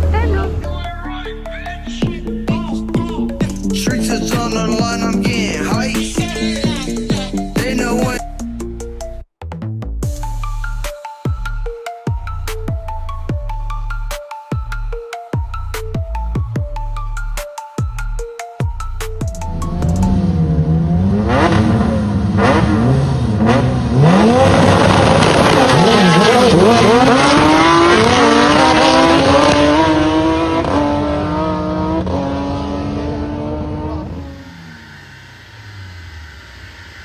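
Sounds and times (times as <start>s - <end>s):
car engine revving: 0.0s - 1.0s, 19.4s - 37.0s.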